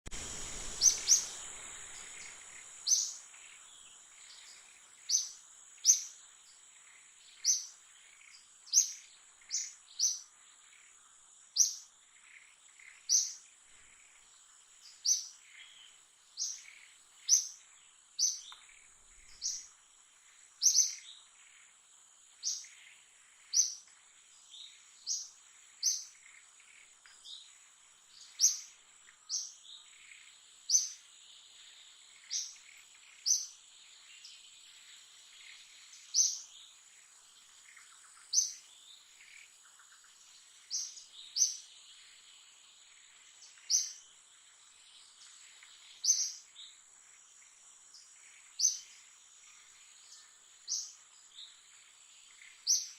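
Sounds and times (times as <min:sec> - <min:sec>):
bird chirping: 0:00.1 - 0:52.9
high-pitched insect drone: 0:00.2 - 0:06.1.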